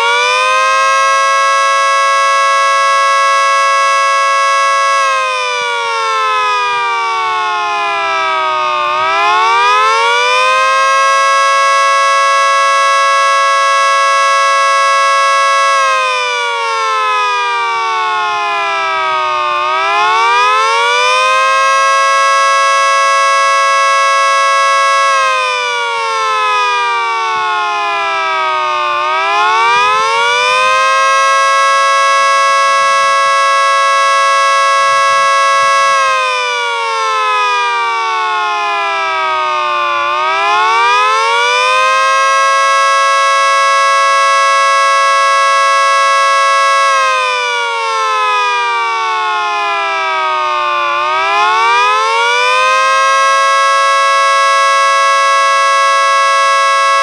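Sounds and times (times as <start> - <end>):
wailing warning siren: 0.0 - 57.0.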